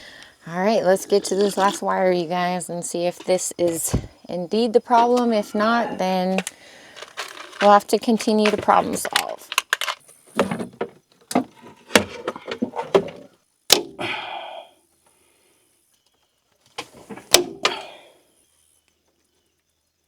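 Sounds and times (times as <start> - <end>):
hand tools clicking and knocking: 4.9 - 13.2.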